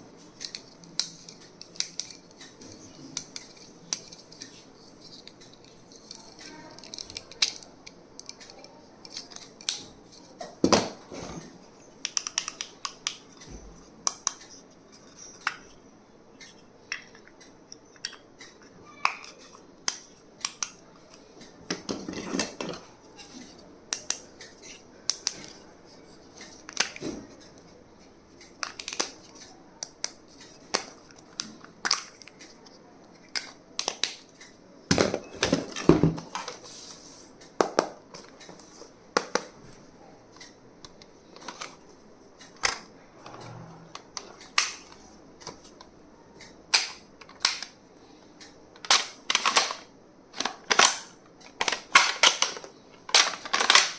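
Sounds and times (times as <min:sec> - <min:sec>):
handling stationery clicks and taps: 0:12.0 - 0:15.6.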